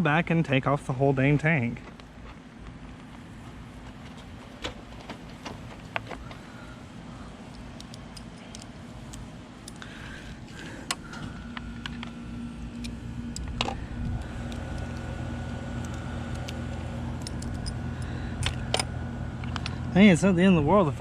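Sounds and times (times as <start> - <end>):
mechanical hum: 0.0 - 21.0
clicks and rattles of parts: 1.8 - 6.6, 7.4 - 15.1, 15.8 - 19.8.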